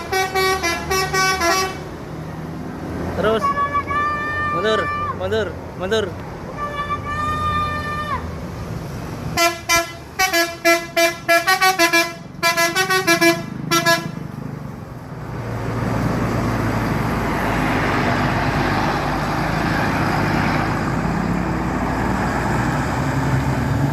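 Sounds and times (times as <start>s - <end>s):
bus musical horn toots: 0.0s - 2.0s, 9.4s - 14.3s
bus engine running: 0.0s - 23.9s.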